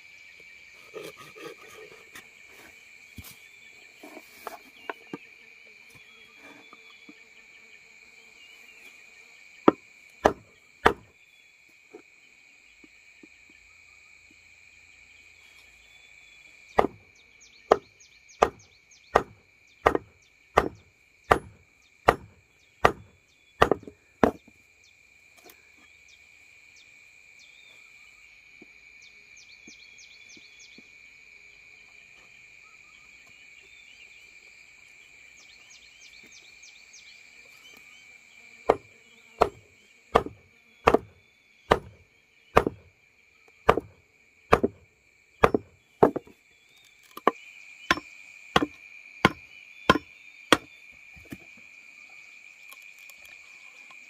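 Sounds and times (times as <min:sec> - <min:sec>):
insects droning and chirping: 0:00.0 - 0:54.0
blade chopping wood: 0:09.6 - 0:11.1, 0:16.8 - 0:17.0, 0:17.7 - 0:24.5, 0:38.7 - 0:42.9, 0:43.6 - 0:44.8, 0:45.4 - 0:46.3, 0:47.0 - 0:51.4.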